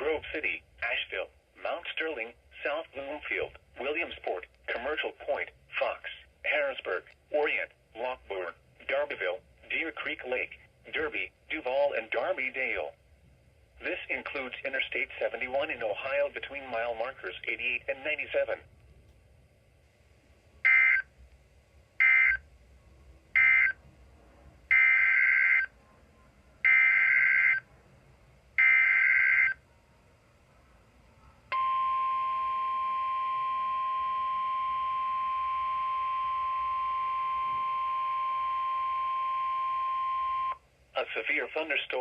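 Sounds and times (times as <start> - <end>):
steady alarm tone: 20.6 - 21.1, 22.0 - 22.5, 23.3 - 23.9, 24.7 - 27.7, 28.5 - 29.8, 31.5 - 40.6.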